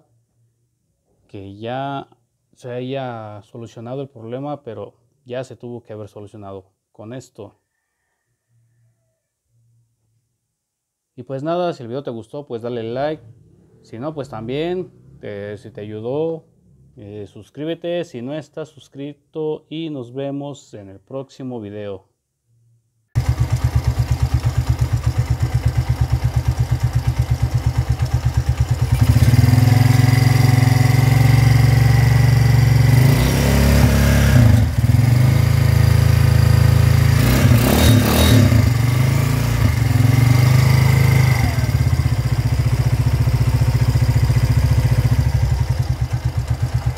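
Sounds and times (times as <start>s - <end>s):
engine idling and revving: 23.2s - 46.9s.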